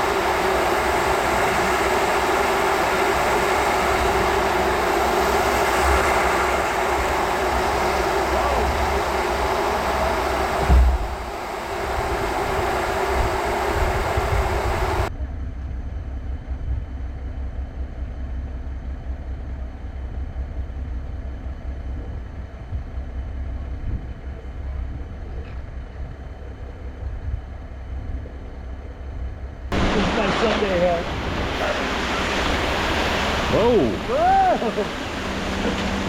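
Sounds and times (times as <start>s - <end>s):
wind buffeting microphone: 0.0s - 15.1s, 29.1s - 36.0s
heavy engine running: 0.0s - 36.0s.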